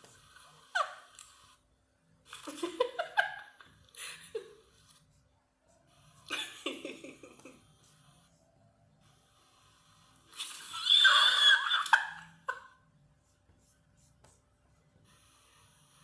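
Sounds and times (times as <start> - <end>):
woman laughing: 6.3 - 7.6.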